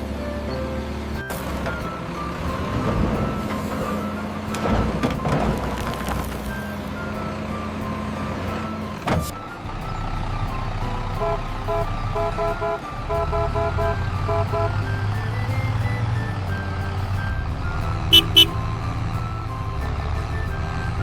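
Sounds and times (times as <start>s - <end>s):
plinking background tune: 0.0s - 21.0s.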